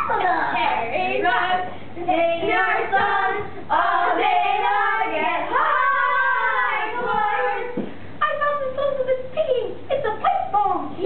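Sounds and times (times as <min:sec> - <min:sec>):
young voices chanting a song: 0:00.0 - 0:07.8.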